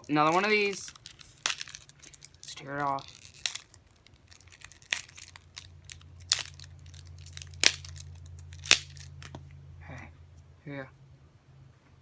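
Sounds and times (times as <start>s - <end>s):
sharp crackles: 0.0s - 9.3s
foil pack tearing and crinkling: 0.1s - 9.3s.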